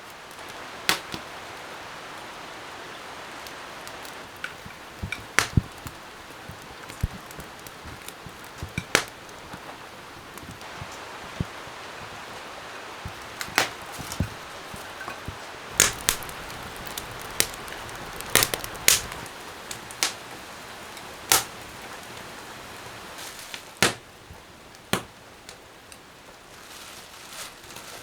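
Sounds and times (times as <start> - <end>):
rain hissing: 0.0 - 28.0
sharp wooden knocks: 4.5 - 9.6.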